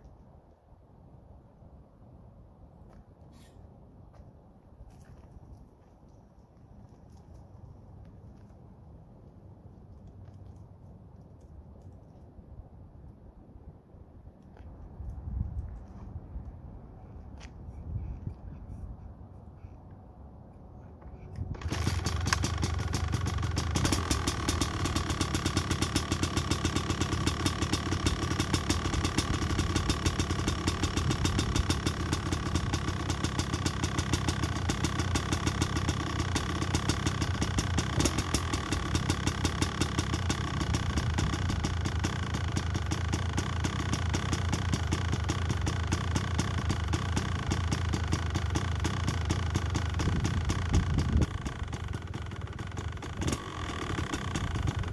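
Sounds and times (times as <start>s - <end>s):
dirt bike engine idling: 20.8s - 54.9s.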